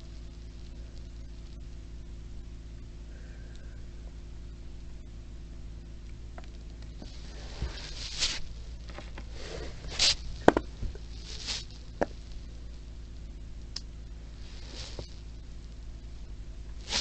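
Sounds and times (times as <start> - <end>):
steady low hum: 0.0 - 17.0
plastic toy rustling: 7.0 - 12.4, 14.5 - 15.1.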